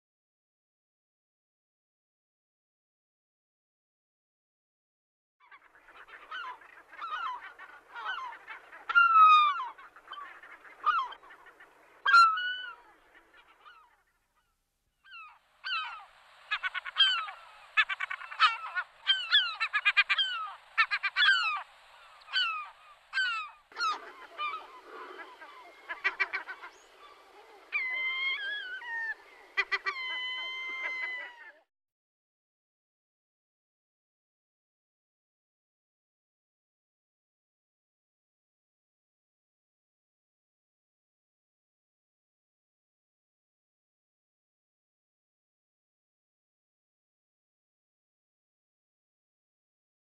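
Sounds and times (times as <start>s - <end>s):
geese honking: 15.7s - 21.6s, 22.2s - 31.4s.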